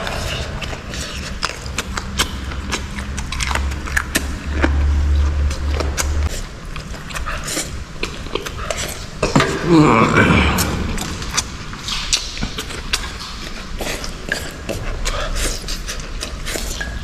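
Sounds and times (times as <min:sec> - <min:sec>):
low rumble: 0:00.0 - 0:06.9, 0:09.6 - 0:13.2
chewing and crunching: 0:00.0 - 0:17.0.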